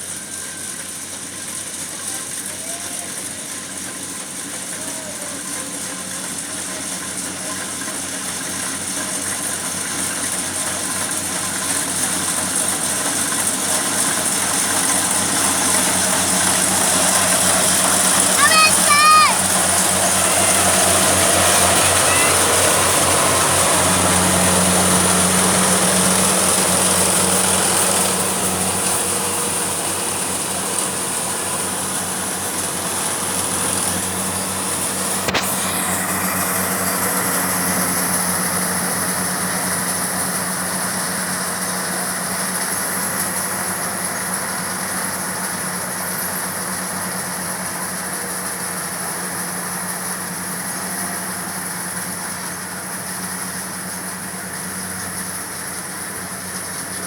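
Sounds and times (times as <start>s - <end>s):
harvester engine running: 0.0s - 57.0s.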